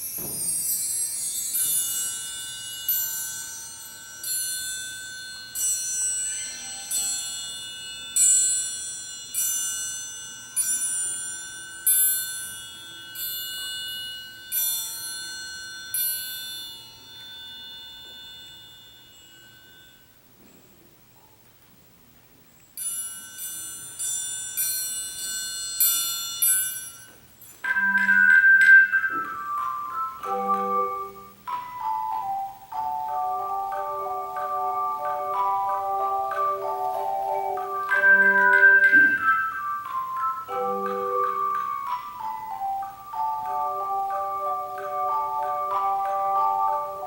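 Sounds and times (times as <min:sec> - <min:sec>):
tone chimes ringing: 0:26.4 - 0:47.0.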